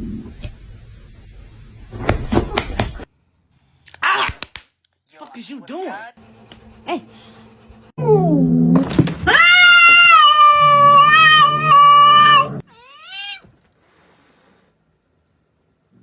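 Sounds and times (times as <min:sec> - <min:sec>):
cat meowing: 0:09.3 - 0:13.5
cat yowling: 0:09.3 - 0:13.5.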